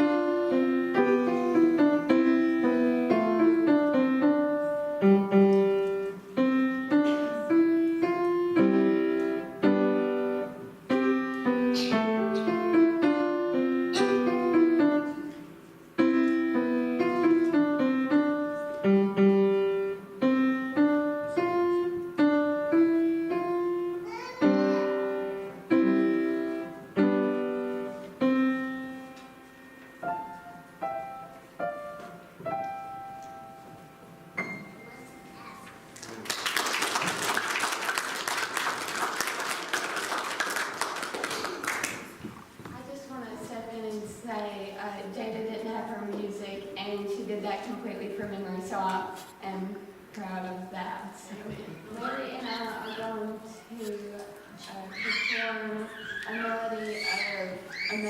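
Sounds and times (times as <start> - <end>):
solo piano piece: 0.0 - 36.2.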